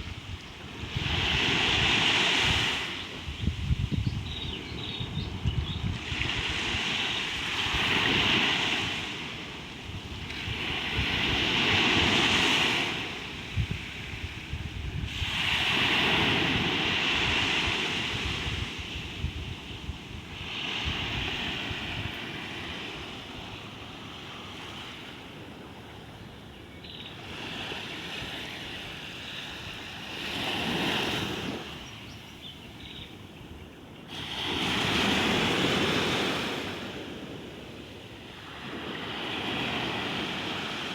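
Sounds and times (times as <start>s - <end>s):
ocean waves breaking on shore: 0.0s - 3.4s, 5.8s - 40.9s
wind buffeting microphone: 0.0s - 7.0s, 9.9s - 23.4s.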